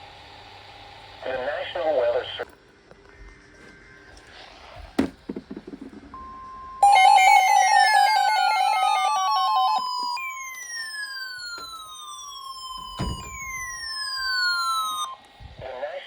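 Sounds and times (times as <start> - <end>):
weather alert alarm tone: 6.2 - 15.2
falling sweep tones: 6.8 - 15.2
fast warbling beep: 6.8 - 15.2.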